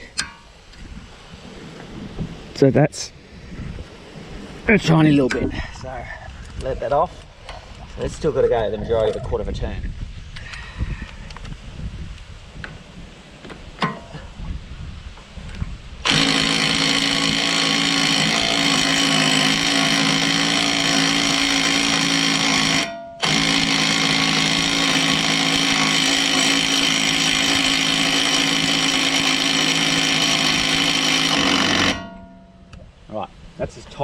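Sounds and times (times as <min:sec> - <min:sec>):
impact wrench hammering: 0:16.0 - 0:32.7.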